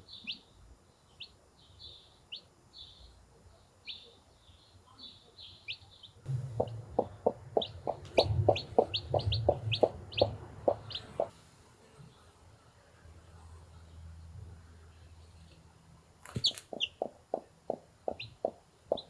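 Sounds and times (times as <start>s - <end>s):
chicks peeping: 5.0s - 11.3s, 16.3s - 19.0s
hen clucking rapidly: 6.3s - 11.3s, 16.4s - 19.0s.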